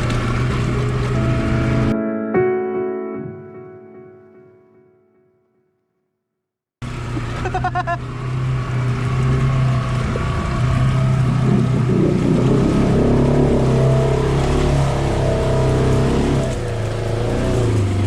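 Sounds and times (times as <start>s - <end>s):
utility vehicle engine under load: 0.0s - 1.9s, 6.8s - 18.0s.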